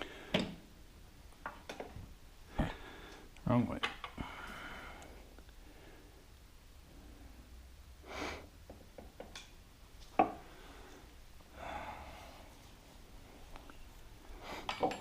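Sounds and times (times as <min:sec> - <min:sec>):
person breathing: 0:00.0 - 0:00.7, 0:02.5 - 0:03.4, 0:04.0 - 0:08.6, 0:10.3 - 0:15.0.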